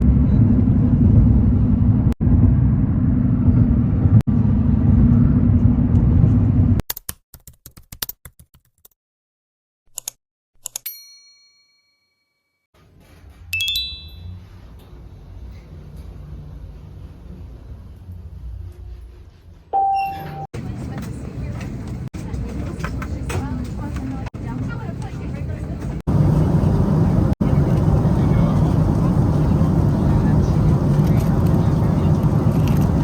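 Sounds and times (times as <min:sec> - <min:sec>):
low rumble: 0:00.0 - 0:06.8, 0:24.2 - 0:33.0
bell-like dings: 0:10.9 - 0:12.5, 0:13.6 - 0:14.4, 0:19.8 - 0:20.5.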